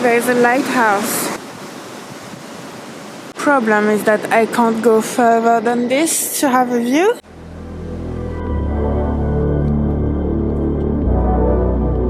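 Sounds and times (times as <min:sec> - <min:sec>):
dark ambient music: 0:07.2 - 0:12.0.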